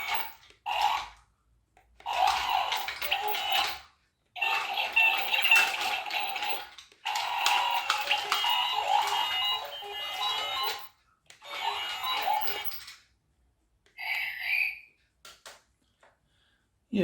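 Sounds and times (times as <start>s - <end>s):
toy robot electronic sound effects: 0.0s - 1.2s, 2.0s - 3.8s, 4.4s - 12.9s, 14.0s - 14.9s.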